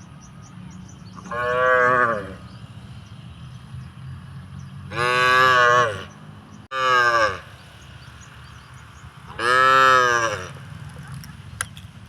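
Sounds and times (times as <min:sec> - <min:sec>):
cattle mooing: 0:01.2 - 0:02.4, 0:04.9 - 0:06.1, 0:06.7 - 0:07.5, 0:09.4 - 0:10.6.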